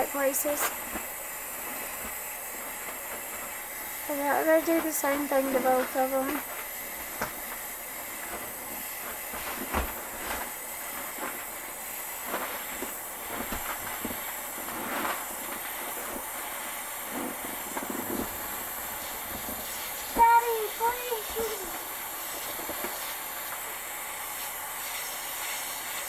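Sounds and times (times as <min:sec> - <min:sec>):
torch flame hissing: 0:00.0 - 0:26.0.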